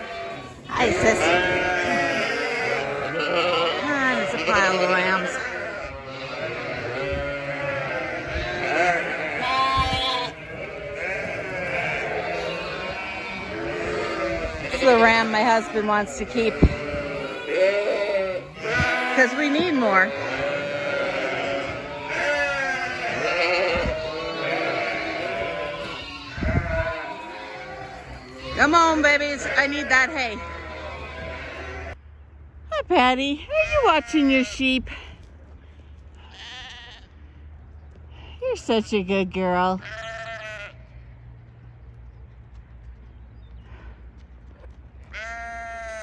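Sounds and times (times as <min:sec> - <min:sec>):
sheep and lambs bleating: 0:00.0 - 0:32.0, 0:33.5 - 0:35.0, 0:36.2 - 0:37.2, 0:39.5 - 0:40.9, 0:45.1 - 0:46.0.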